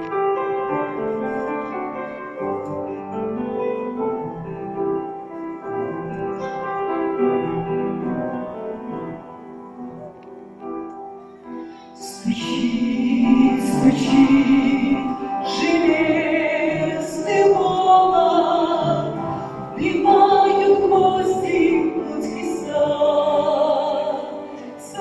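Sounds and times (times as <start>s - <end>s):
slow piano chords: 0.0s - 25.0s
women singing: 12.0s - 25.0s.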